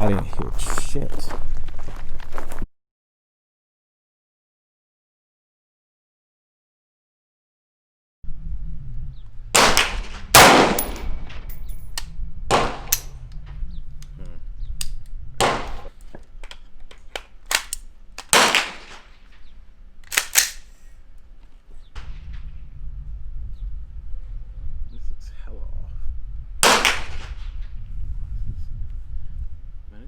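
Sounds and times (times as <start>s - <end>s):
wind rumble on microphone: 0.0s - 2.6s, 8.2s - 16.9s, 21.6s - 30.0s
gunshots echoing: 9.6s - 11.5s, 12.5s - 13.2s, 15.4s - 15.9s, 17.5s - 19.5s, 26.6s - 27.6s
faint gunshots: 18.3s - 19.1s, 26.6s - 27.6s.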